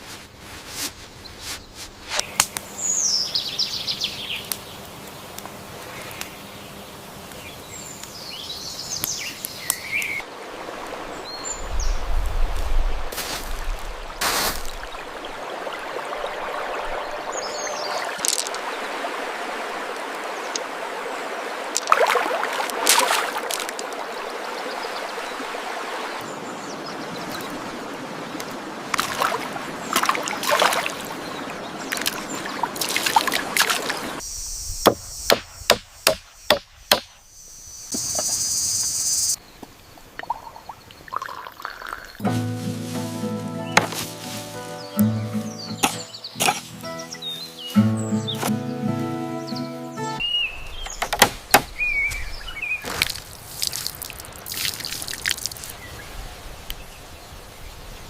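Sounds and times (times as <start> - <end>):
water trickling and splashing: 7.2 - 34.2, 39.4 - 44.9, 50.6 - 58.0
bird chirps: 16.1 - 18.8, 37.2 - 42.4, 43.5 - 52.9
sharp knocks: 34.9 - 37.1, 50.9 - 51.7.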